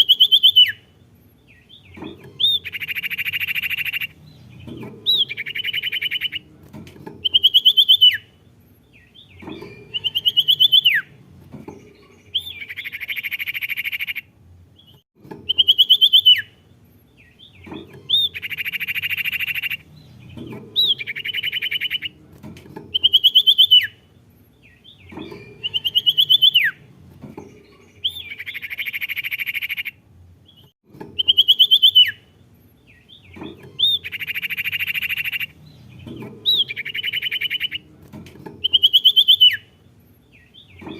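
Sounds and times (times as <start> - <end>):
songbird singing: 0.0 - 40.9.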